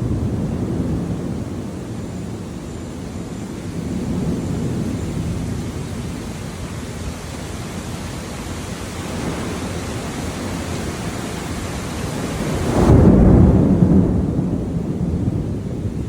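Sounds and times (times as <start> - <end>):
heavy rain: 0.0 - 16.0
thunder rumbling: 0.0 - 16.0.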